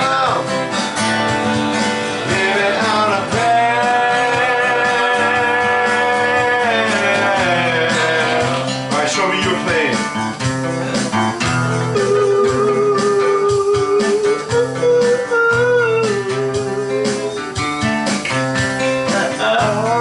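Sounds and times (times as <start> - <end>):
guitar music with steady beat: 0.0 - 20.0.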